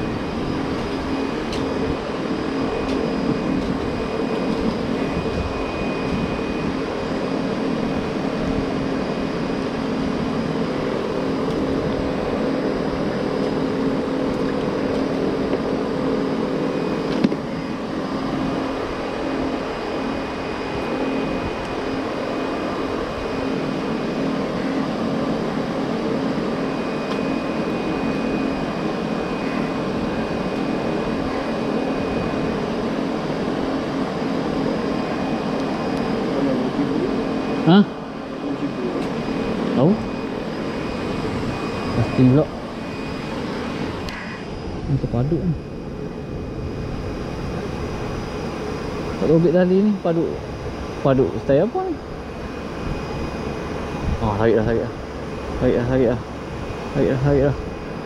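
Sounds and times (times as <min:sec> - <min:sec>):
mechanical hum: 0:00.0 - 0:58.0.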